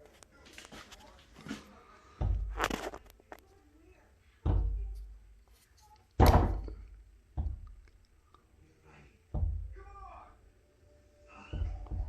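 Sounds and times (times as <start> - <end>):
dull knocks on door: 7.4 - 7.7, 9.3 - 9.8.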